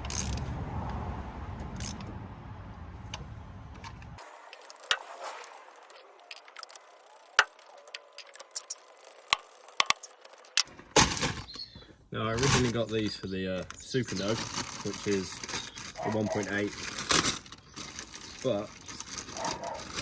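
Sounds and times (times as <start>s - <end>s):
low steady rumble: 0.0s - 4.2s.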